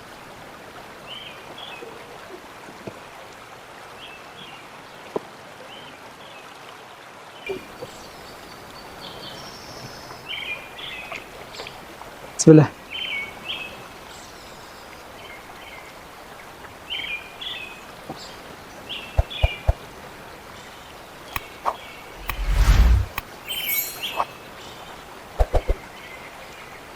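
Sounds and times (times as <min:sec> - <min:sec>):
loud rush of low noise: 0:22.2 - 0:24.1
small birds chirping: 0:22.2 - 0:24.3.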